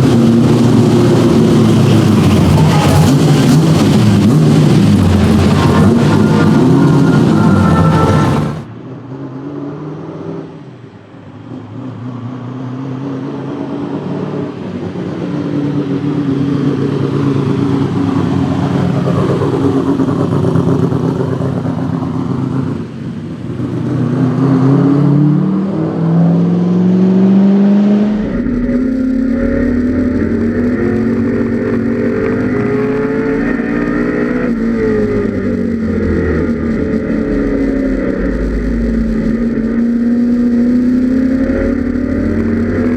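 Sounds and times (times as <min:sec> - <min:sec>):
engine low rumble: 0:00.0 - 0:09.2, 0:25.9 - 0:42.9
race car engine accelerating: 0:00.0 - 0:42.9.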